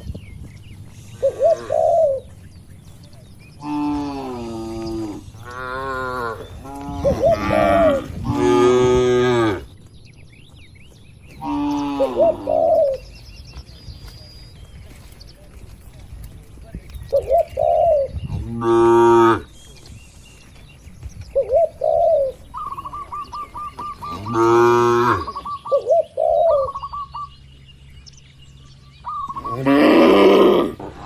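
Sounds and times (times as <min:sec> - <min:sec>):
cattle mooing: 0:03.6 - 0:09.7, 0:24.1 - 0:25.4, 0:29.4 - 0:30.8.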